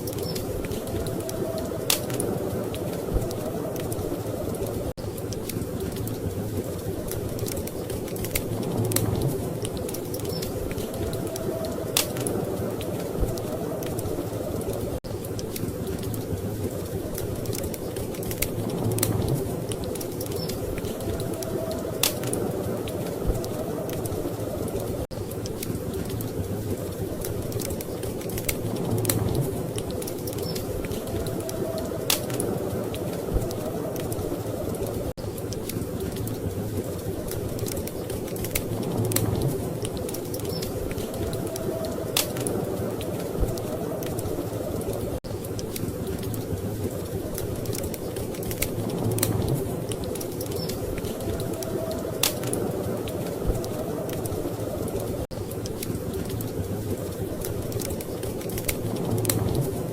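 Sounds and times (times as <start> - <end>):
storm wind rumbling: 0.0 - 59.9
wood fire crackling and popping: 0.0 - 59.9.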